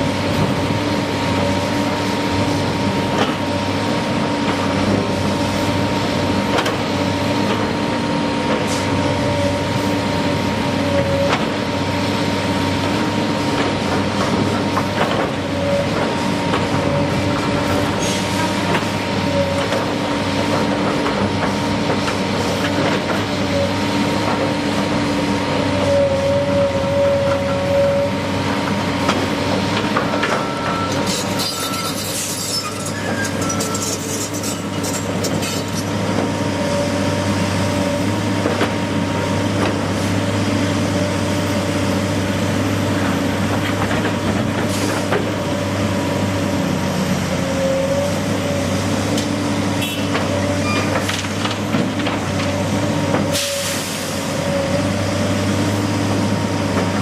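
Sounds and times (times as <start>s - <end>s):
heavy machinery humming and whining: 0.0s - 57.0s.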